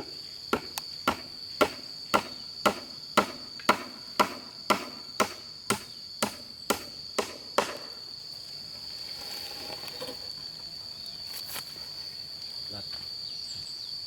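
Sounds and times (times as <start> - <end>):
insect trilling: 0.0 - 14.0
chopping strikes: 0.5 - 7.9.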